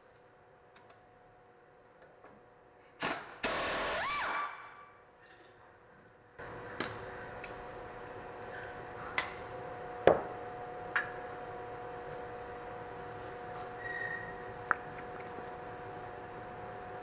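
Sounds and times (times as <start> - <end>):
power tool whirring: 3.4 - 4.6.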